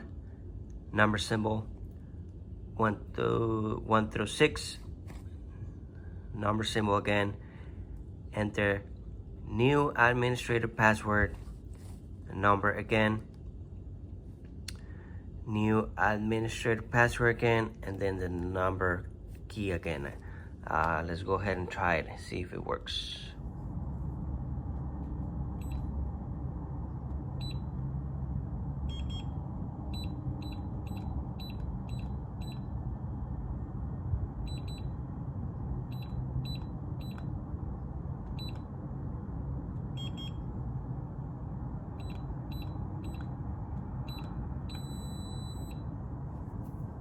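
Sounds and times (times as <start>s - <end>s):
steady low hum: 0.0s - 47.0s
keypad door lock beeping: 29.9s - 32.7s, 44.0s - 45.9s.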